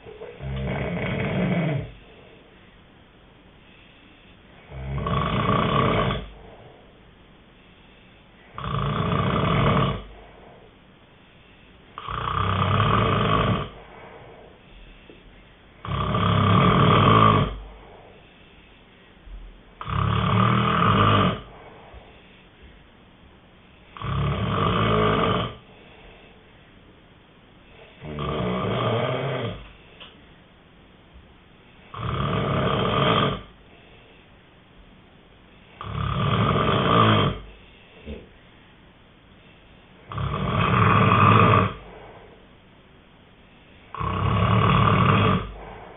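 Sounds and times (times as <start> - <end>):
person snoring: 0.0 - 2.4, 4.5 - 6.9, 8.5 - 10.7, 11.9 - 15.0, 15.8 - 18.2, 19.8 - 22.4, 23.8 - 26.3, 27.8 - 29.8, 31.9 - 33.6, 35.8 - 38.3, 40.0 - 42.4, 43.9 - 45.9
quiet breathing: 0.0 - 45.9.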